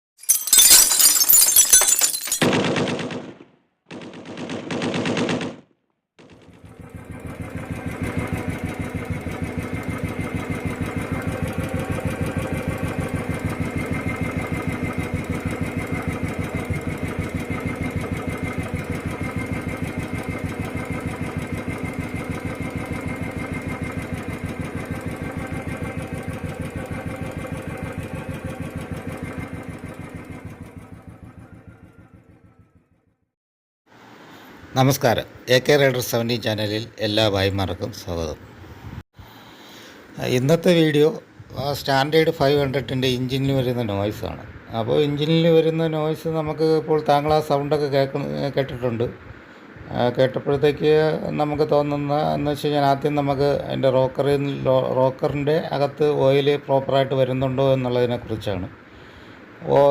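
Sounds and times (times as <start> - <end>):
motorcycle engine clattering: 6.2 - 33.1.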